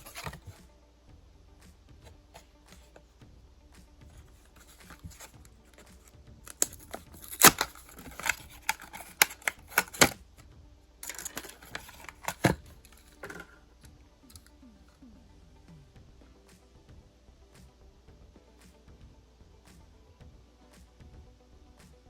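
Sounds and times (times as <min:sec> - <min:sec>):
blister packaging crackling: 0:06.5 - 0:10.2, 0:11.0 - 0:13.5
packaging tearing: 0:06.5 - 0:10.2, 0:11.0 - 0:12.6
plastic snaps: 0:06.5 - 0:10.2, 0:11.0 - 0:13.6.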